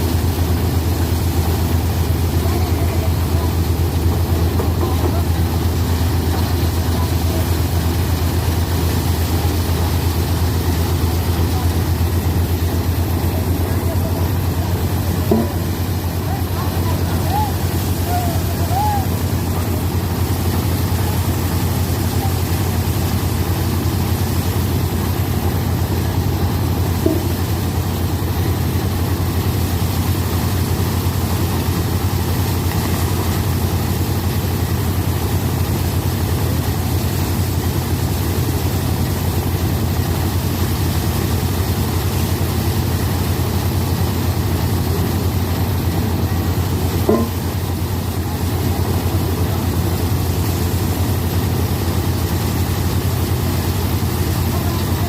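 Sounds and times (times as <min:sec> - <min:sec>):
rice thresher droning: 0:00.0 - 0:55.0
short knock: 0:47.1 - 0:47.4.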